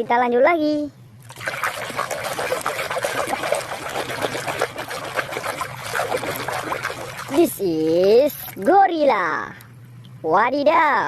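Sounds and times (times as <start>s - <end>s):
water trickling and splashing: 1.2s - 8.7s.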